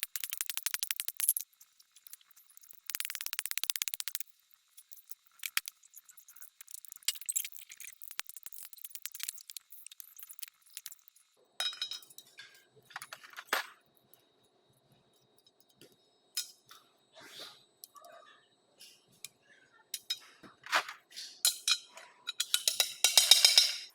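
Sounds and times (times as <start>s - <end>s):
metal tools clinking: 6.3s - 13.8s, 21.5s - 23.9s.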